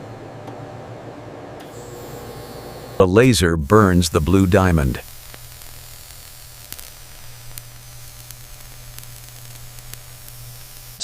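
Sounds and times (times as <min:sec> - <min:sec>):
low electrical hum: 0:00.0 - 0:11.0
machine hiss: 0:01.7 - 0:11.0
faint crackles: 0:03.7 - 0:11.0.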